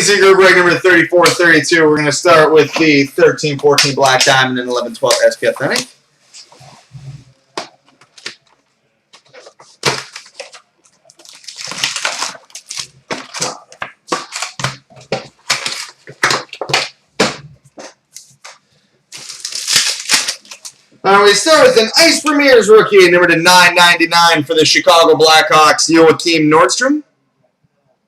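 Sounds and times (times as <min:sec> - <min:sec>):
plastic wrapping crinkling and tearing: 0:07.6 - 0:16.9, 0:18.2 - 0:21.0.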